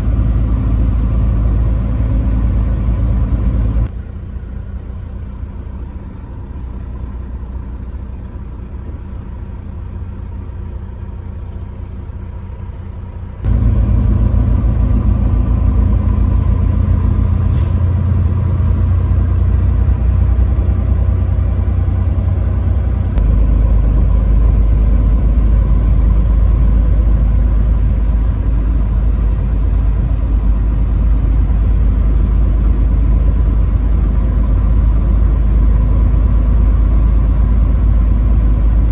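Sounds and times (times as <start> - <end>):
road noise: 0.0 - 38.9
truck engine rumble: 0.0 - 38.9.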